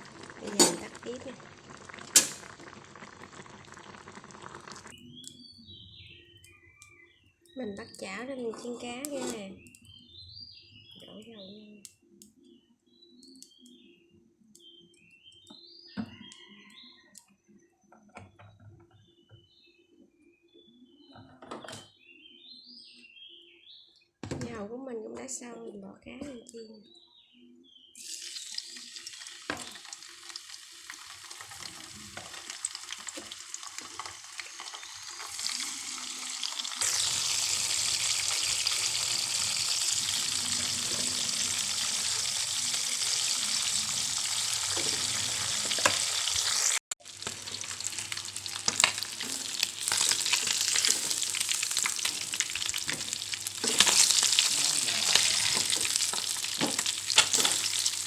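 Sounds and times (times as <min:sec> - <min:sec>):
fish sizzling in hot oil: 0:00.0 - 0:05.4, 0:28.0 - 0:58.0
oil spitting pops: 0:02.1 - 0:02.7.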